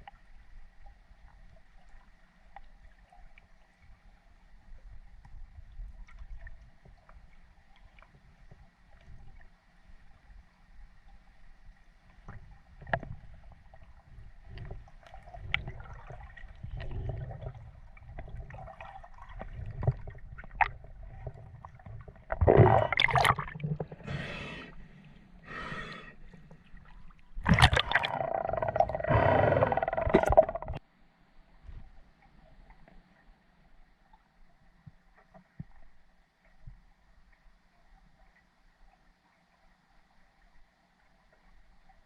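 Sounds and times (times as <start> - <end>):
water gurgling and sloshing: 0.0 - 30.9
rushing bursts of bubbles: 15.5 - 24.1, 27.4 - 30.8.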